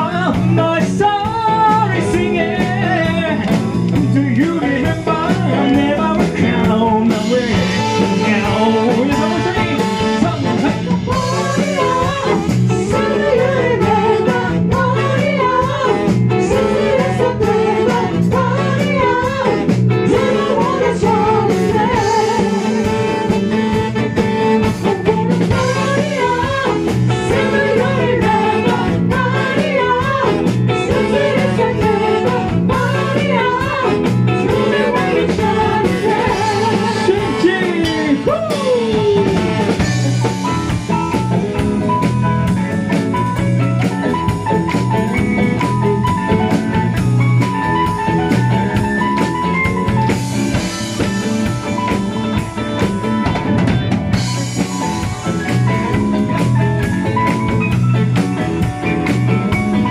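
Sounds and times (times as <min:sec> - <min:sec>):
band playing with drums bass guitar: 0:00.0 - 0:59.9
bending lead guitar line: 0:00.0 - 0:59.9.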